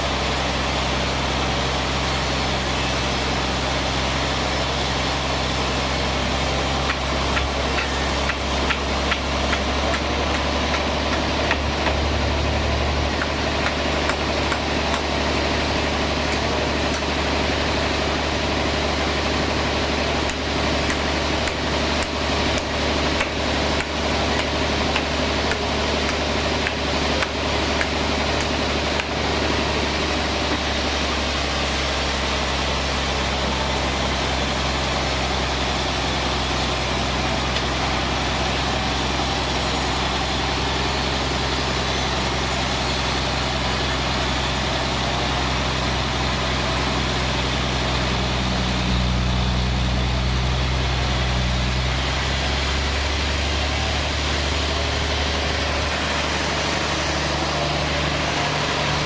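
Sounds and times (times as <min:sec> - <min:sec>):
broad rushing noise: 0:00.0 - 0:59.0
sawmill machine hum: 0:00.0 - 0:59.0.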